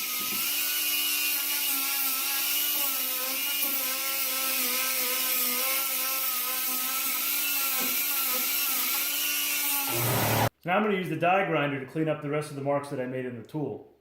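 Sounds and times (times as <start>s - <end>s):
die grinder sanding steel: 0.0s - 10.5s.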